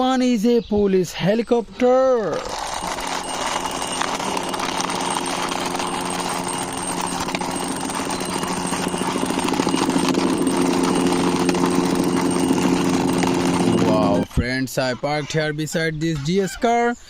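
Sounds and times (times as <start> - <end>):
fast-rattling mechanical drone: 2.3 - 14.5.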